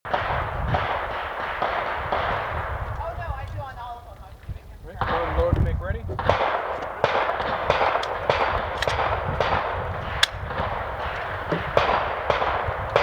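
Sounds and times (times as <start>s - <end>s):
pistol shots: 0.1s - 2.8s, 6.2s - 13.0s.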